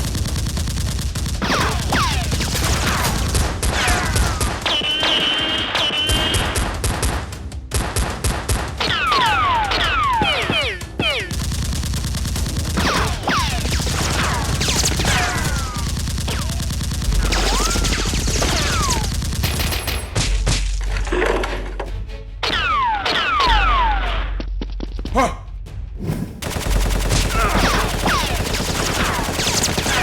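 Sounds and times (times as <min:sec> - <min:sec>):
automatic gunfire: 0:00.0 - 0:10.4, 0:11.2 - 0:20.2, 0:26.4 - 0:30.0.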